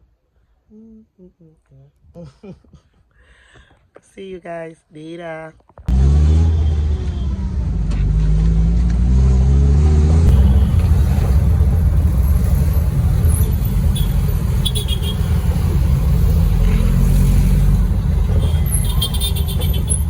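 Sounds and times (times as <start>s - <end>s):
road rumble: 5.8s - 20.0s
car engine running: 10.3s - 20.0s.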